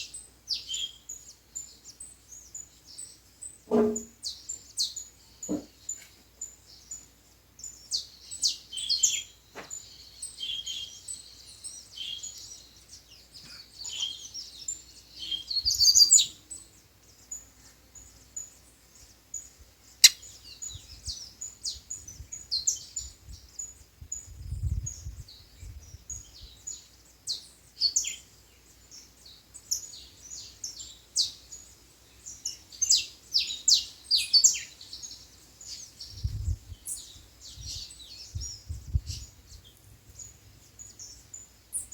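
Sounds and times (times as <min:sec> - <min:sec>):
birds chirping and trilling: 0:00.0 - 0:41.9.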